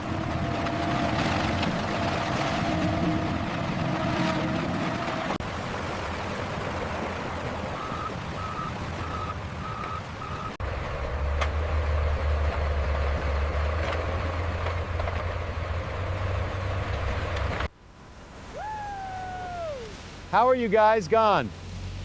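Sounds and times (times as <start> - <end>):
low heavy engine: 0.0 - 22.0
reversing alarm beeping: 7.7 - 10.6.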